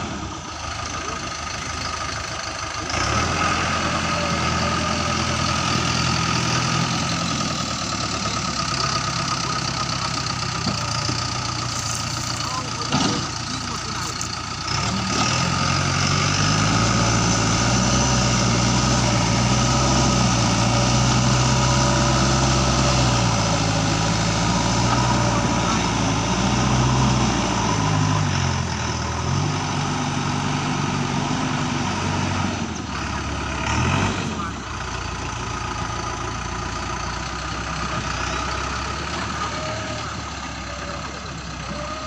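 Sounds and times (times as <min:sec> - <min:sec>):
diesel engine revving under load: 0:00.0 - 0:42.0.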